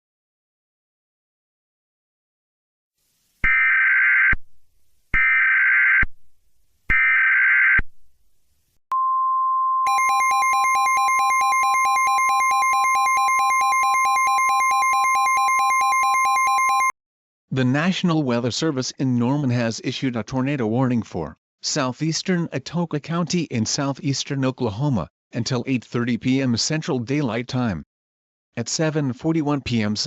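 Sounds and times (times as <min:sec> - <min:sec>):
steady alert tone: 0:09.9 - 0:16.9.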